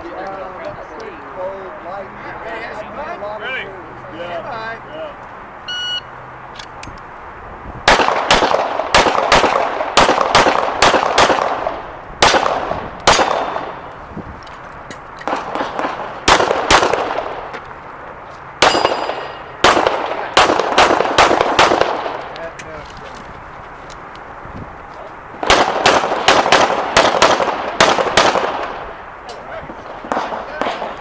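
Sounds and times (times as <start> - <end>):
pistol shots with ringing echo: 7.8 - 13.9, 15.2 - 17.5, 18.6 - 22.4, 25.4 - 28.9, 29.7 - 31.0.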